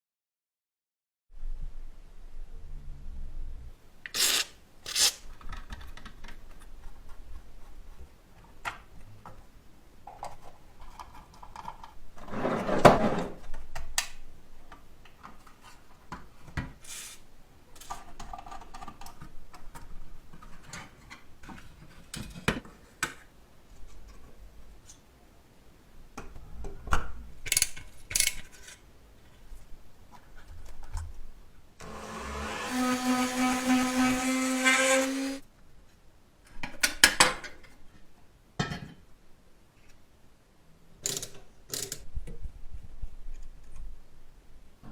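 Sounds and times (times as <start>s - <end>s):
small parts clicking and scraping: 27.5s - 28.8s
small high-speed power tool: 31.8s - 35.4s.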